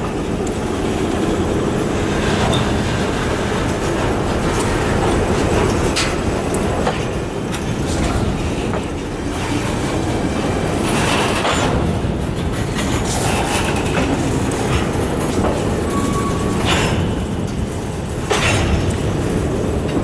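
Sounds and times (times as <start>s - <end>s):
train wheels clattering: 0.0s - 20.0s
wheel squeals: 15.6s - 17.0s.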